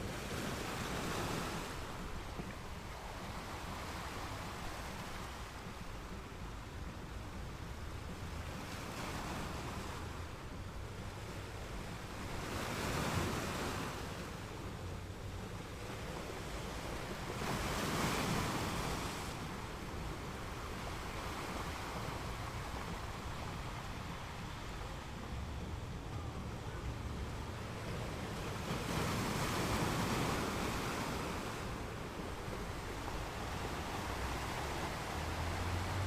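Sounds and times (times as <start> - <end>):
waves breaking: 0.0 - 36.0
waves washing: 0.0 - 36.0.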